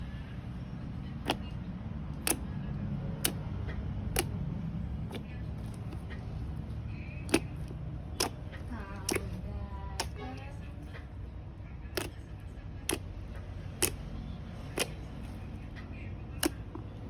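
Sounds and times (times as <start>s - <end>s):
slime popping clicks: 7.3s - 8.4s, 9.0s - 9.4s, 12.0s - 12.2s.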